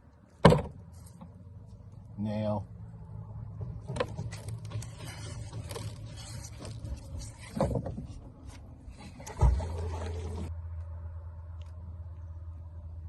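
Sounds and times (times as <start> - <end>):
loud thump: 0.4 - 0.8
rustling and knocks on boat: 3.6 - 10.5.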